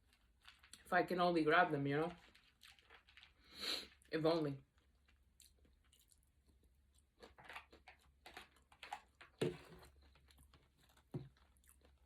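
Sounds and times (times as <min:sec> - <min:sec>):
crunchy chewing: 0:02.2 - 0:04.1, 0:04.7 - 0:12.0.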